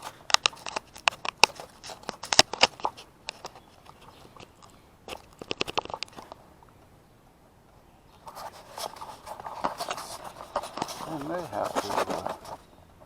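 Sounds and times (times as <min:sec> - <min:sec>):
plastic parts clicking: 0:00.0 - 0:06.4.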